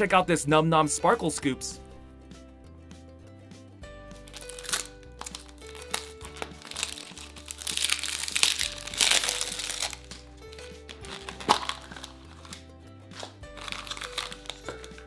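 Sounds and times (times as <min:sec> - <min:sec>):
background music: 0:00.0 - 0:15.0
packaging tearing: 0:04.2 - 0:15.0
plastic packaging crinkling: 0:04.2 - 0:15.0.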